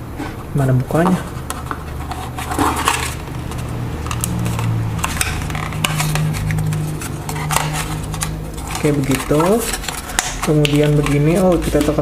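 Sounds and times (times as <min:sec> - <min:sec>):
steady low hum: 0:00.0 - 0:12.0
packaging clicks and clatter: 0:02.2 - 0:12.0.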